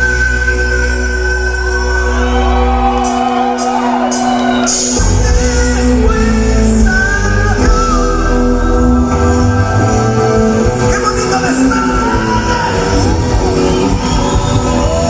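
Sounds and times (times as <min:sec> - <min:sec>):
bass: 0:00.0 - 0:15.0
live band music: 0:00.0 - 0:15.0.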